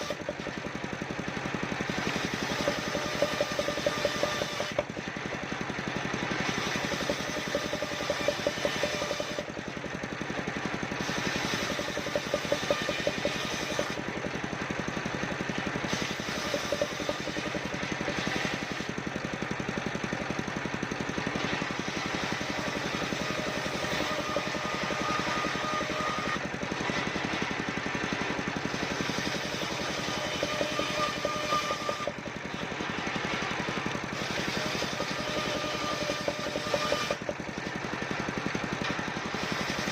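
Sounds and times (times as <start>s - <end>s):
engine-driven sawmill running: 0.0s - 39.9s
saw blade hissing: 6.4s - 9.4s, 11.0s - 14.0s, 15.8s - 18.9s.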